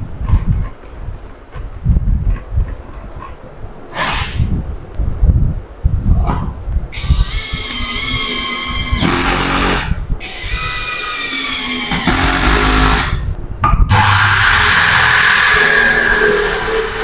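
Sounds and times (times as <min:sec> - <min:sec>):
electric drill motor whining: 0:07.0 - 0:13.3, 0:13.9 - 0:17.0.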